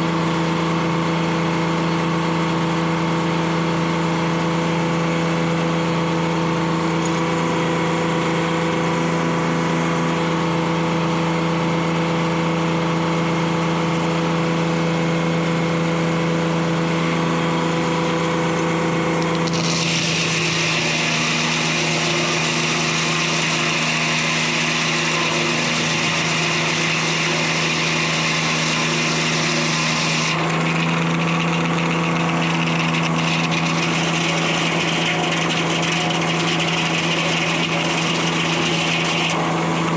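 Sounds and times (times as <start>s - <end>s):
diesel engine running: 0.0s - 39.9s
circular saw blade cutting log: 16.0s - 39.9s.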